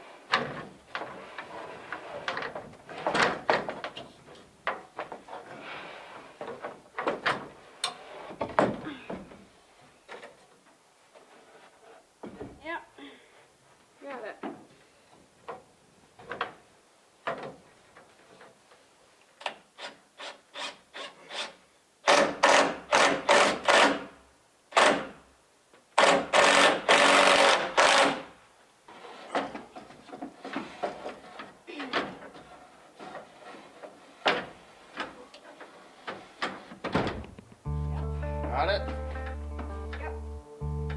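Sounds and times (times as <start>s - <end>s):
wood scraping on wood: 0.3s - 4.4s, 28.9s - 36.8s.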